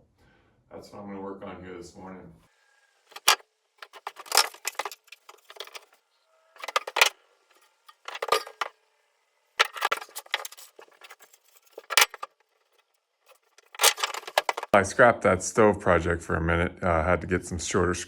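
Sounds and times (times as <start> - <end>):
metal pieces clinking: 3.1 - 5.9, 6.6 - 7.1, 8.0 - 8.7, 9.6 - 12.3, 13.3 - 14.8.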